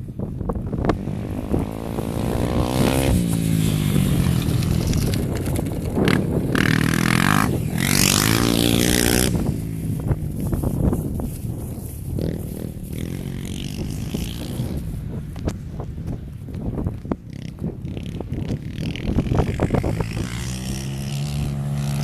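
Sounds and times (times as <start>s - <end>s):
dirt bike engine revving: 0.7s - 10.9s, 12.2s - 14.9s, 17.3s - 22.0s.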